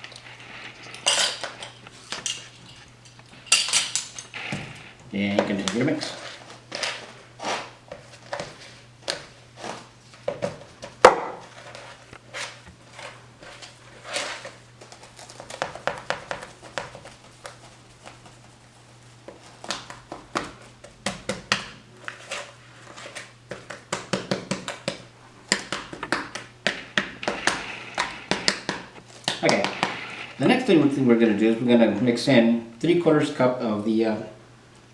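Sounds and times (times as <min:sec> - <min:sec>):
whisk scraping a mixing bowl: 0:29.4 - 0:30.7.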